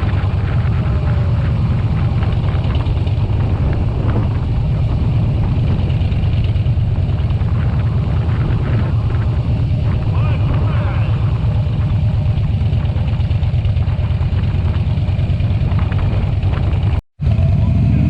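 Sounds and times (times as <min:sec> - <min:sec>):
motorcycle engine rumble: 0:00.0 - 0:18.0
road and wind noise: 0:00.0 - 0:18.0.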